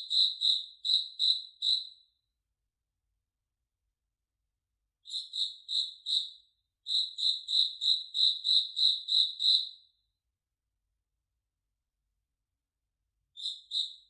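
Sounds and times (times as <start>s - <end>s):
cricket chirping: 0.0s - 1.9s, 5.1s - 6.3s, 6.9s - 9.7s.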